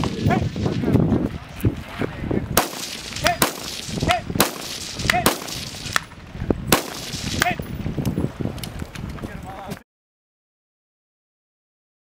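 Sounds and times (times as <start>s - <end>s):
rifle shots: 2.6s - 6.1s, 6.7s - 7.6s.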